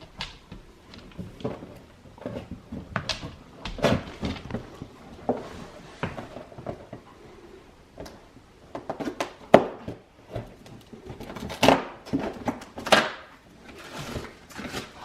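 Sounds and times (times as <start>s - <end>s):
cardboard and packaging rustling: 0.1s - 7.2s, 8.1s - 15.0s.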